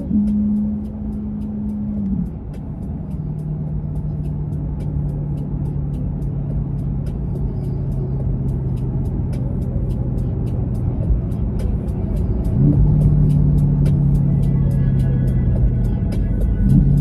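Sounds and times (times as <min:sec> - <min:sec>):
car engine droning: 0:00.0 - 0:17.0
music with ticking beat: 0:00.0 - 0:17.0.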